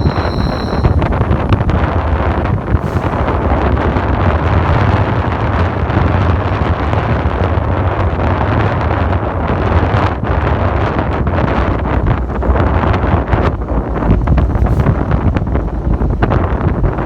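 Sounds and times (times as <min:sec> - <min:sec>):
strong wind buffeting microphone: 0:00.0 - 0:17.0.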